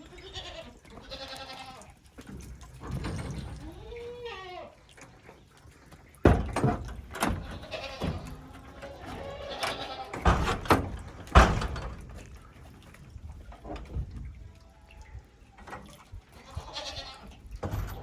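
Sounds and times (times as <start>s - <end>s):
goats bleating: 0.0s - 1.9s, 3.6s - 4.8s, 7.3s - 10.4s, 16.4s - 17.3s.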